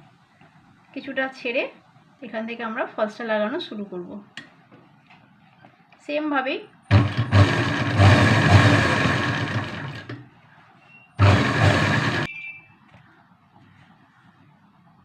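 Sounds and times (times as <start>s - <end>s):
sewing machine stitching: 6.9s - 10.2s, 11.2s - 12.3s.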